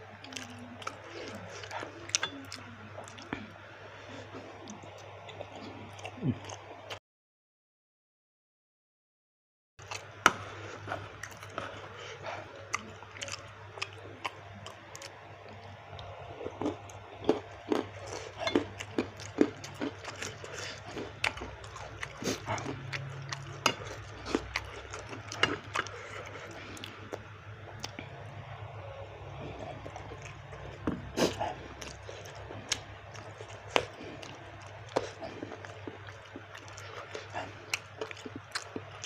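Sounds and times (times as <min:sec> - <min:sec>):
steady low hum: 0:09.8 - 0:39.0.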